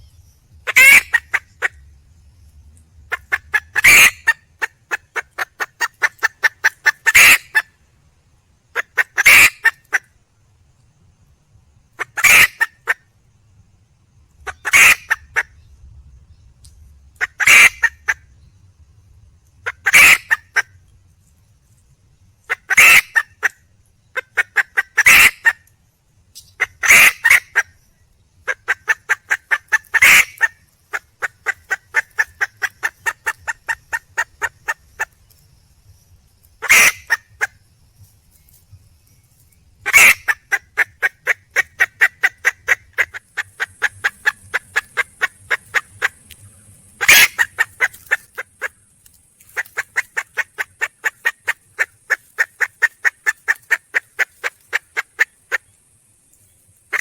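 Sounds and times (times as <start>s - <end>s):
hen clucking: 0.6s - 1.8s, 3.1s - 7.7s, 8.8s - 10.0s, 12.0s - 13.0s, 14.4s - 15.5s, 17.2s - 18.2s, 19.6s - 20.8s, 22.5s - 25.6s, 26.6s - 27.7s, 28.5s - 35.4s, 36.6s - 37.6s, 39.8s - 48.8s, 49.4s - 55.7s
loud single hen call: 0.6s - 1.8s, 3.1s - 5.5s, 6.4s - 7.6s, 14.5s - 15.4s, 19.8s - 20.6s, 22.5s - 23.5s, 24.2s - 25.6s, 26.6s - 27.7s, 36.6s - 37.3s, 39.9s - 43.2s, 47.0s - 48.4s.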